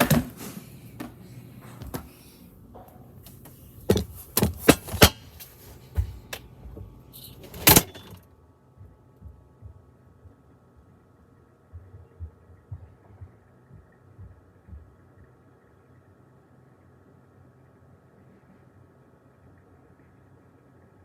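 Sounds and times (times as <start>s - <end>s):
freezer door banging shut: 0.0s - 0.6s, 3.9s - 5.4s, 7.4s - 8.2s
faint low hum: 0.0s - 21.0s.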